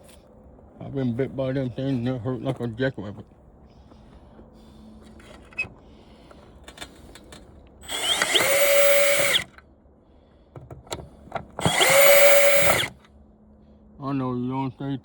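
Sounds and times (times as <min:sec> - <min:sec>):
cordless screw gun whining: 0:07.8 - 0:09.6, 0:11.6 - 0:13.0.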